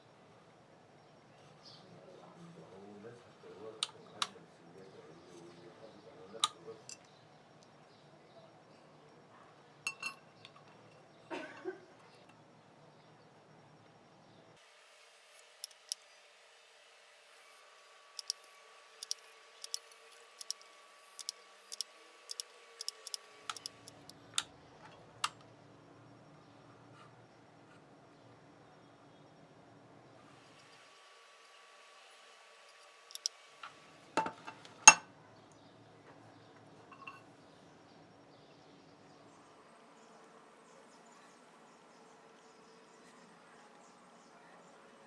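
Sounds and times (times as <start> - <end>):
small parts clicking: 14.8 - 16.1, 18.1 - 24.1, 32.6 - 33.4.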